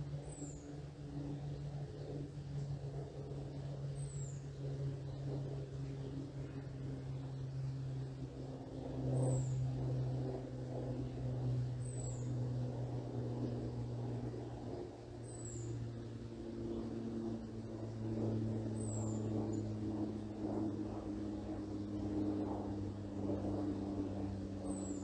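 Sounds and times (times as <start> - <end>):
airplane droning overhead: 0.0 - 25.0.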